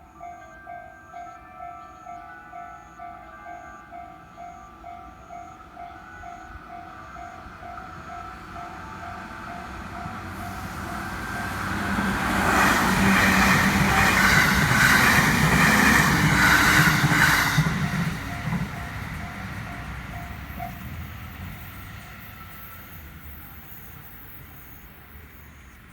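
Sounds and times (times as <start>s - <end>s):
level-crossing warning bell ringing: 0.0s - 25.8s
train passing: 0.0s - 25.9s.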